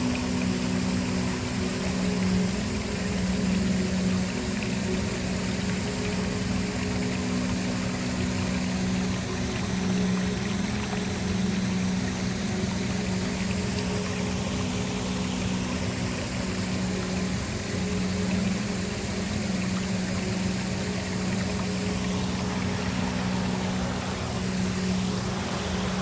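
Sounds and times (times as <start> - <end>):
low even hum: 0.0 - 26.0
waterfall rushing: 6.3 - 26.0.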